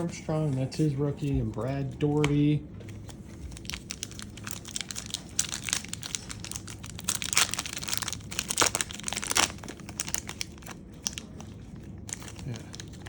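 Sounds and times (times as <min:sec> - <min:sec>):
paper wrapper tearing and crinkling: 0:03.0 - 0:13.0.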